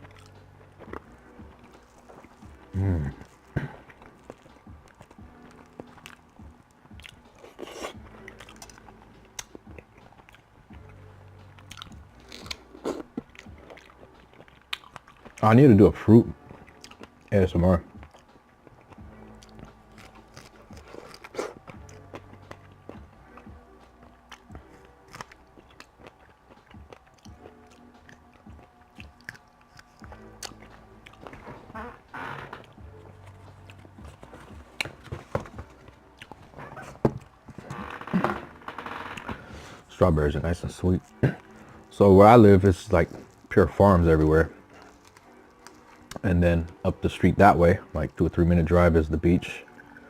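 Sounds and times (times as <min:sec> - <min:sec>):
person biting and chewing food: 0:00.0 - 0:11.0, 0:11.6 - 0:15.4, 0:16.6 - 0:17.3, 0:17.9 - 0:39.8, 0:42.9 - 0:43.6, 0:44.5 - 0:46.8
small crunches: 0:44.7 - 0:46.3.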